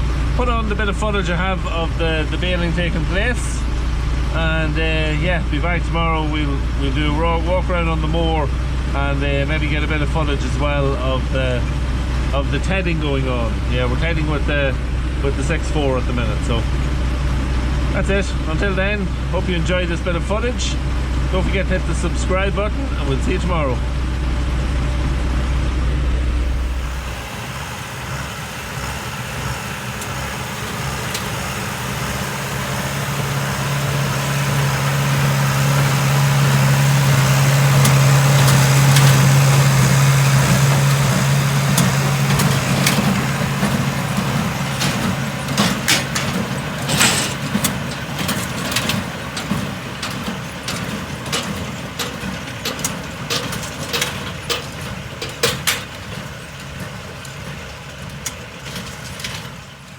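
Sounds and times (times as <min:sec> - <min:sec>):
tractor engine running: 0:00.0 - 0:59.9
baler clicks and knocks: 0:28.0 - 0:59.6.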